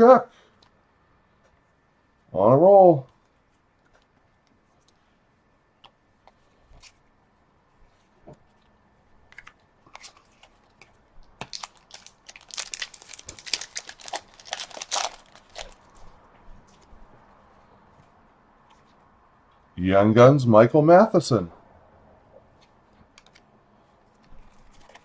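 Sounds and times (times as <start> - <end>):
cards being handled: 5.8 - 7.1, 7.8 - 17.2, 22.6 - 23.5, 24.1 - 25.0
wrapper tearing and crinkling: 11.4 - 16.0.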